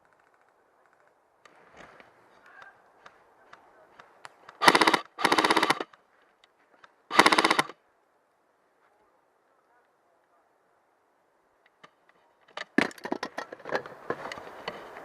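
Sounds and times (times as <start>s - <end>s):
airsoft gun bursts: 4.6s - 5.9s, 7.1s - 7.8s.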